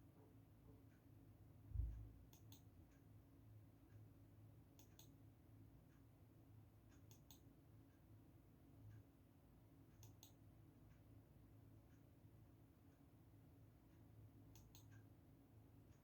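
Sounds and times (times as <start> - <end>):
faint low hum: 0.0 - 16.0
soft clicks: 1.9 - 3.1, 4.8 - 5.2, 6.9 - 7.5, 10.0 - 10.4, 14.5 - 15.1.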